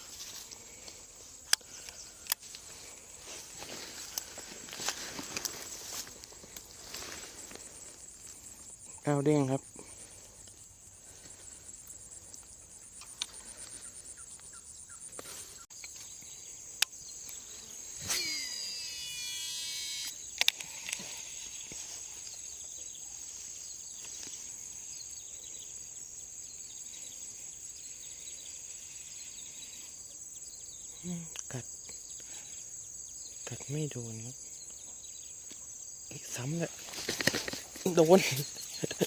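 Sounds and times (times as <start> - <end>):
insect chorus: 0.0 - 39.0
sharp clicks: 1.5 - 2.6, 20.0 - 21.1
whirring: 18.0 - 20.2.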